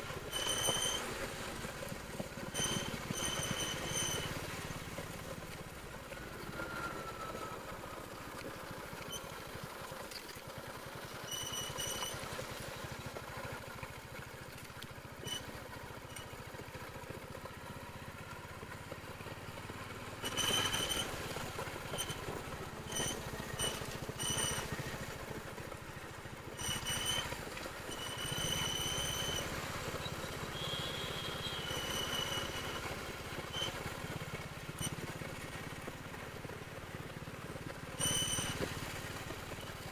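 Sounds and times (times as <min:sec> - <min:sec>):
motorcycle engine running: 0:00.0 - 0:08.9, 0:11.5 - 0:39.9
short high-pitched tones: 0:26.6 - 0:33.8, 0:38.0 - 0:38.7.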